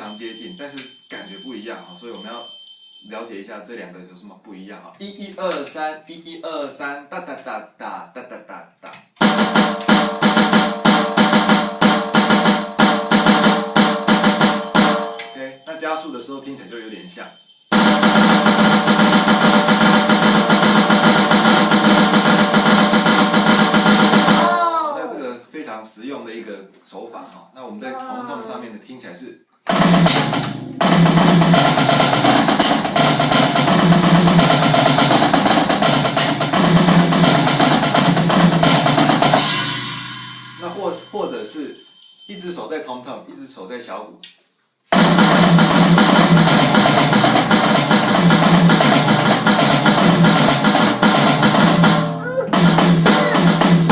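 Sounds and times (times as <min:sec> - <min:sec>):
tom-toms played fast: 0:00.0 - 0:02.4, 0:09.2 - 0:16.1, 0:17.7 - 0:24.6, 0:29.7 - 0:41.5, 0:44.9 - 0:53.9
snare drum fast triplets: 0:09.2 - 0:15.4, 0:17.7 - 0:24.6, 0:29.7 - 0:41.0, 0:44.9 - 0:53.9.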